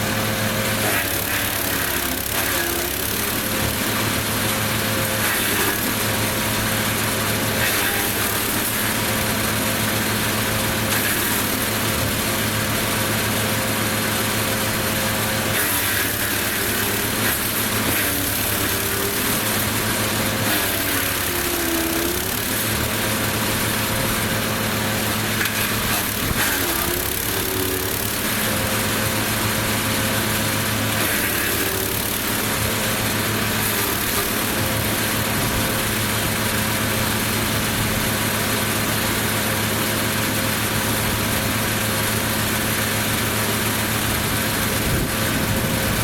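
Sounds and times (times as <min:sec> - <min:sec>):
wood chipper engine running: 0:00.0 - 0:46.0
branches shredding with crackles: 0:00.8 - 0:03.9, 0:15.5 - 0:24.2, 0:25.1 - 0:28.6.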